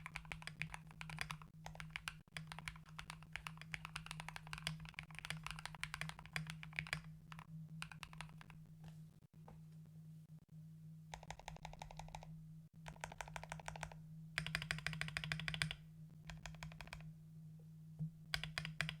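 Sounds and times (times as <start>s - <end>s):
mechanical keyboard typing: 0.0s - 8.5s, 11.2s - 12.3s, 12.9s - 17.1s, 18.4s - 19.0s.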